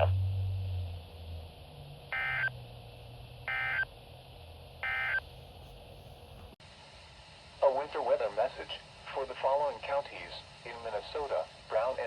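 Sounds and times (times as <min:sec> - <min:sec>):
low hum: 0:00.0 - 0:07.8.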